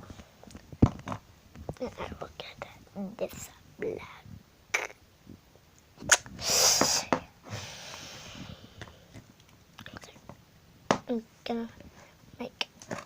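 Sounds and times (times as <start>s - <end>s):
breathy puff of air: 6.4s - 9.1s.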